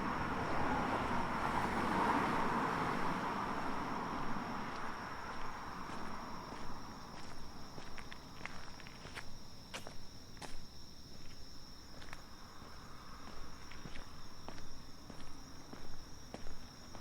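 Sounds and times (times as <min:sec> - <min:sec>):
crickets chirping: 0:00.0 - 0:17.0
footsteps: 0:04.7 - 0:17.0.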